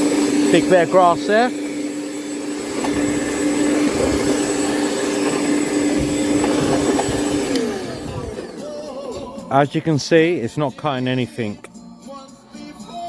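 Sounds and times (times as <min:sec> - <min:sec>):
electric lawn mower humming: 0:00.0 - 0:09.5.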